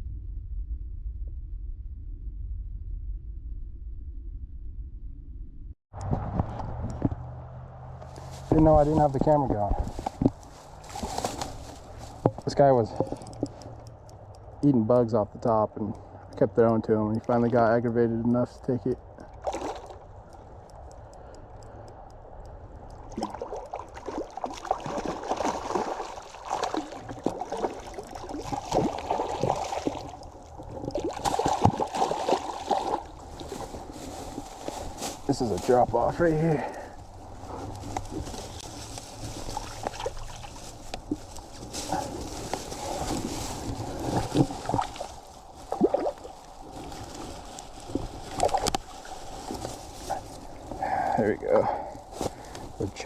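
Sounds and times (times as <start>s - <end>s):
water splashing and sloshing: 8.0s - 14.6s, 19.0s - 21.1s, 22.8s - 53.0s.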